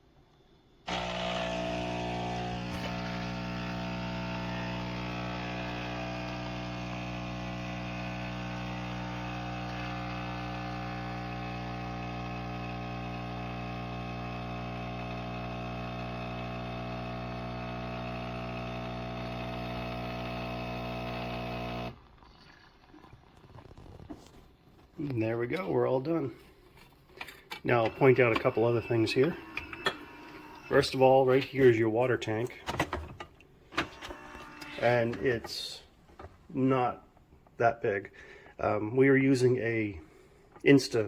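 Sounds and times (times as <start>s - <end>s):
espresso machine humming: 0.9s - 22.0s, 27.8s - 31.2s, 33.8s - 35.7s.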